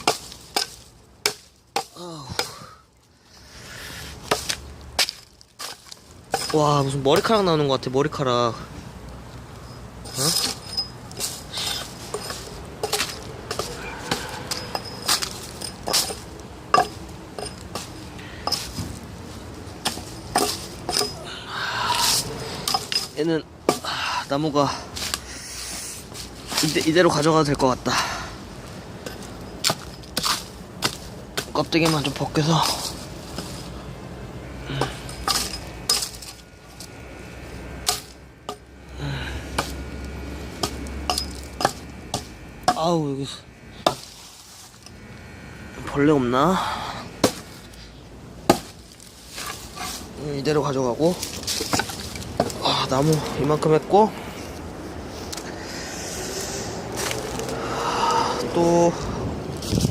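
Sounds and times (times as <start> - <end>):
hatchet chopping log: 0.0 - 2.8, 4.2 - 7.4, 12.1 - 18.8, 23.6 - 23.9, 29.6 - 32.9, 37.8 - 38.6, 39.5 - 39.8, 40.6 - 42.9, 43.8 - 44.1, 47.2 - 47.5, 48.5 - 48.8.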